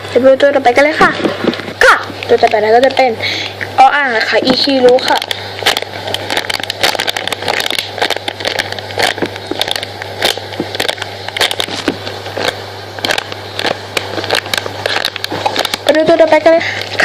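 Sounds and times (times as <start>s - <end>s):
steady low hum: 0.0s - 17.0s
crackling handling noise: 0.8s - 17.0s.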